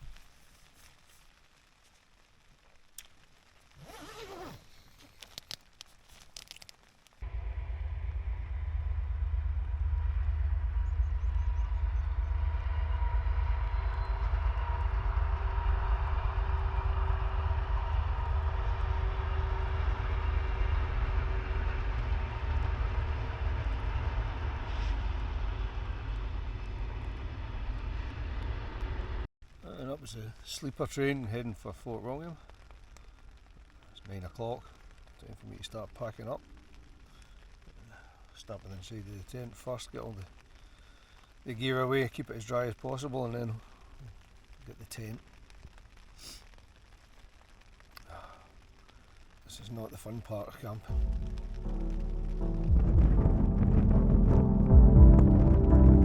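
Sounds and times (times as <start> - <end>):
train passing with loud rumble: 7.2 - 29.3.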